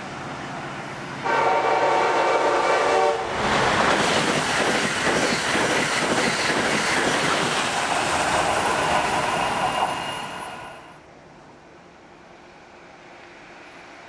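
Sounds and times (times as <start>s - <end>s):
train passing at high speed: 0.0s - 14.0s
train air horn chord: 1.2s - 3.3s.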